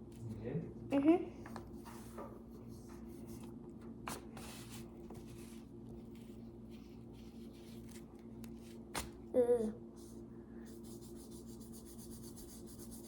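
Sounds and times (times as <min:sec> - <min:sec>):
low electrical hum: 0:00.0 - 0:13.0
paintbrush brushing paint: 0:10.7 - 0:13.0.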